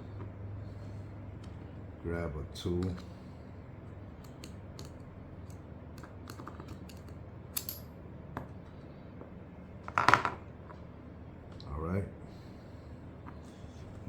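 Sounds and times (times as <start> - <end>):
hand tool clicks and taps: 4.2 - 7.8.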